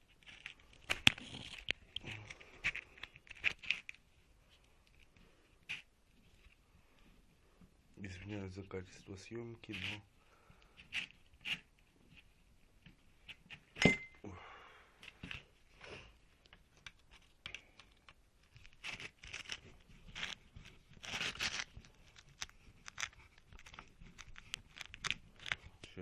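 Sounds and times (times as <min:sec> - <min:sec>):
crinkling scraping handling noise: 0:00.0 - 0:13.8, 0:15.0 - 0:26.0
small metal parts clicking and rattling: 0:00.2 - 0:04.0, 0:16.8 - 0:26.0
sharp metallic clink: 0:13.8 - 0:14.2.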